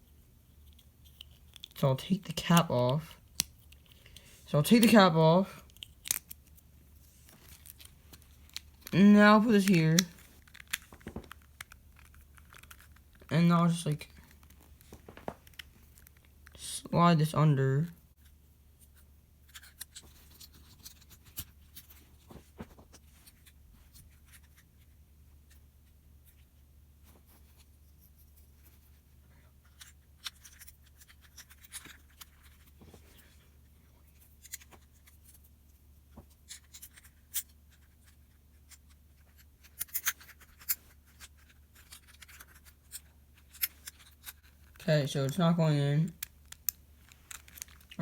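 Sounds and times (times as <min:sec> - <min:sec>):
plastic puzzle pieces clicking: 0:00.6 - 0:01.8, 0:05.6 - 0:06.6, 0:07.4 - 0:13.3, 0:46.1 - 0:48.0.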